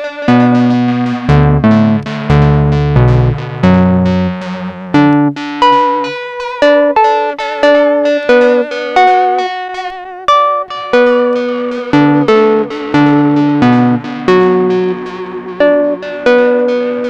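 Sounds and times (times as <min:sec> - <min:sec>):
synth bass line: 0:00.0 - 0:07.0, 0:10.7 - 0:17.0
synthesizer plucked notes with echo: 0:00.0 - 0:17.0.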